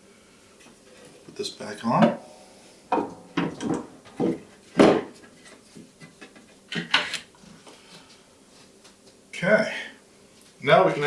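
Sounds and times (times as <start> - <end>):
knocks and scrapes of parts: 2.9 - 7.1.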